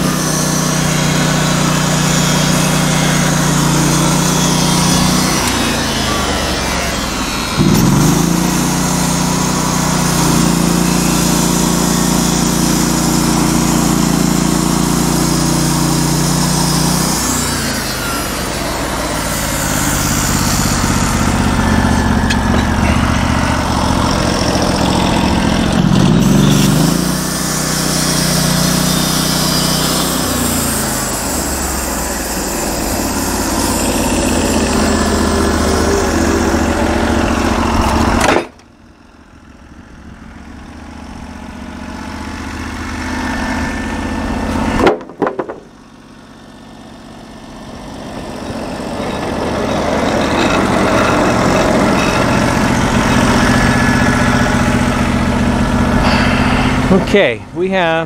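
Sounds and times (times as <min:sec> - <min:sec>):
band blade sawing through log: 0:00.0 - 0:38.6, 0:55.9 - 0:57.2
small gas engine running: 0:00.0 - 0:58.0.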